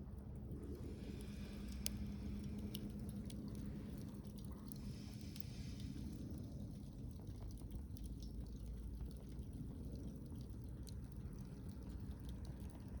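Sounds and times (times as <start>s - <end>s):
fire low rumble: 0.0s - 13.0s
campfire crackling and popping: 1.2s - 5.8s.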